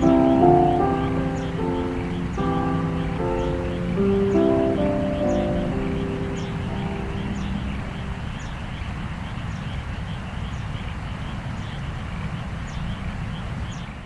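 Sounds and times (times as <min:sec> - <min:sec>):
high falling chirp: 0:00.0 - 0:09.0
low rumble and hiss: 0:00.0 - 0:14.0.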